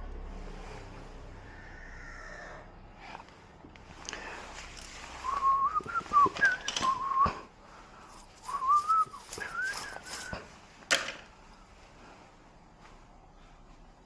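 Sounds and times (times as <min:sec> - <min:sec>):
person whistling a tune: 0:05.2 - 0:07.5, 0:08.4 - 0:10.5
small clicks and knocks: 0:10.9 - 0:11.3.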